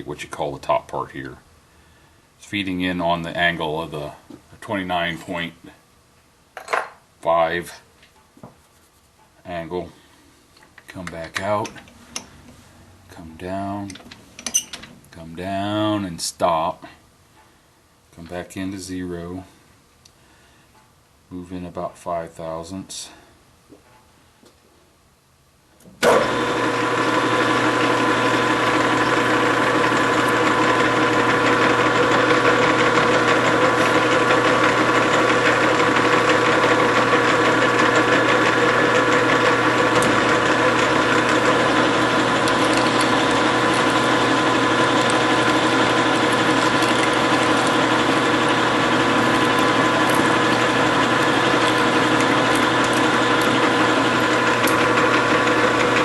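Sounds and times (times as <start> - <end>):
lathe motor whirring: 26.0 - 56.0.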